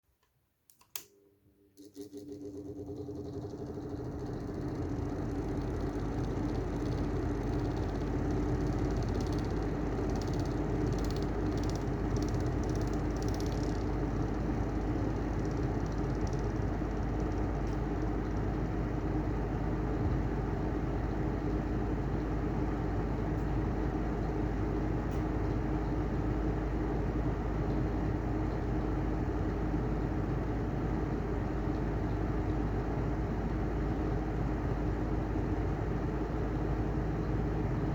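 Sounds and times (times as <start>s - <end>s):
exhaust fan humming and whirring: 0.8s - 37.9s
faint high ticks: 4.3s - 18.5s.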